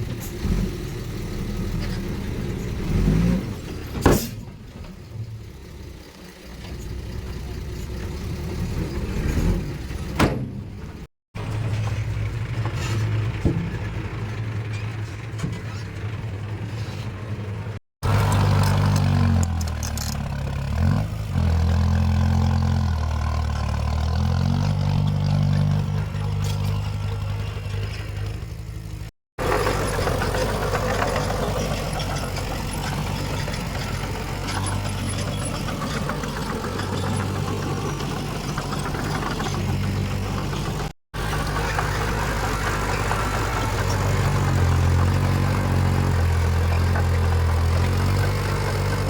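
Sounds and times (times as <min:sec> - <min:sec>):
heavy diesel engine working: 0:00.0 - 0:49.0.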